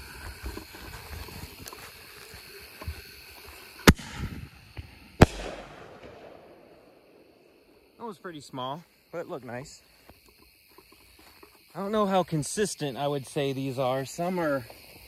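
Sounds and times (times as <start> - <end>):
firework shell bursting overhead: 3.8 - 7.8.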